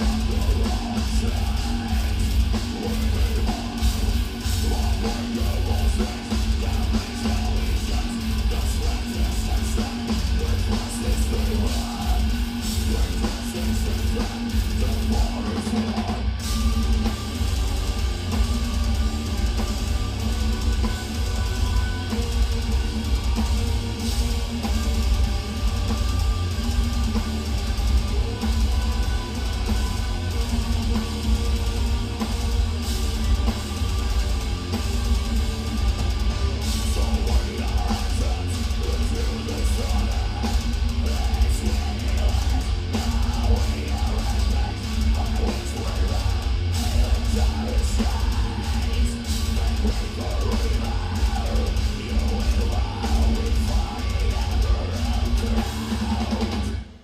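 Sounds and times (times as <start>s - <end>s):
distorted electric guitars: 0.0s - 57.0s
heavy drums: 0.0s - 57.0s.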